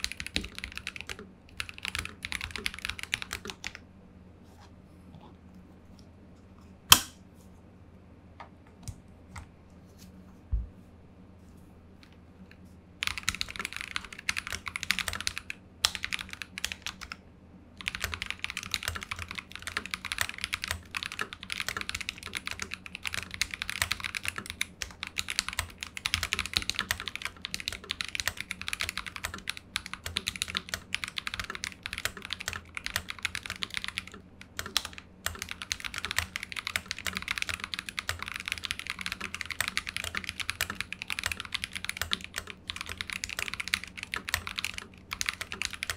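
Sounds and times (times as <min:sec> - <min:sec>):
fast mechanical keyboard typing: 0:00.0 - 0:03.8, 0:13.0 - 0:17.2, 0:17.8 - 0:45.9.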